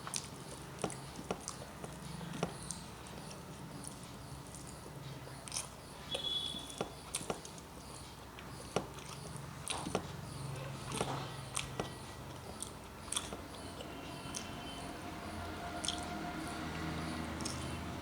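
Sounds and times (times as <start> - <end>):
wet chewing: 0.0 - 18.0
mouth clicks and smacks: 8.4 - 13.6, 15.8 - 16.1, 17.4 - 17.8.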